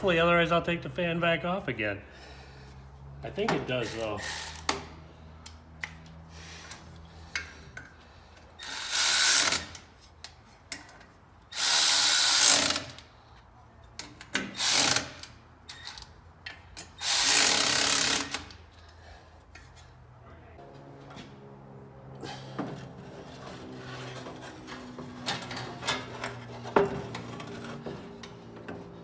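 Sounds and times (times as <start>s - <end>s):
handheld power tool running: 8.6s - 9.8s, 11.6s - 13.0s, 14.6s - 15.2s, 17.0s - 18.5s.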